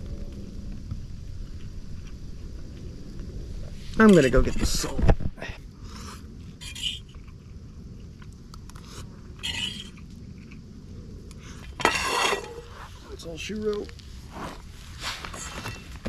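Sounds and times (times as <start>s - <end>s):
scraping and rustling: 11.6s - 16.0s.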